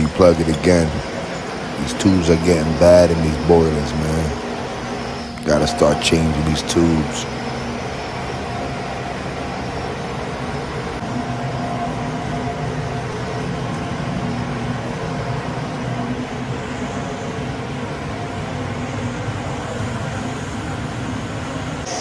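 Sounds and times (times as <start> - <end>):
boiler burner rumbling: 0.0 - 22.0.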